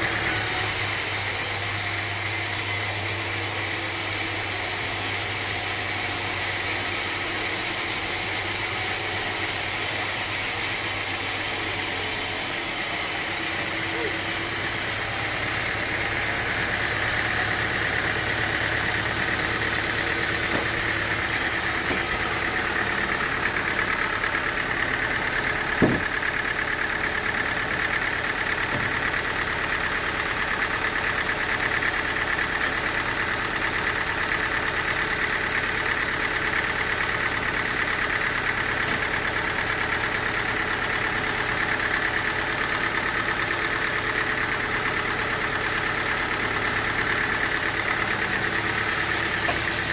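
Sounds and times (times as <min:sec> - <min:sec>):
sawmill machinery running: 0:00.0 - 0:49.9
sharp knock: 0:25.8 - 0:26.1.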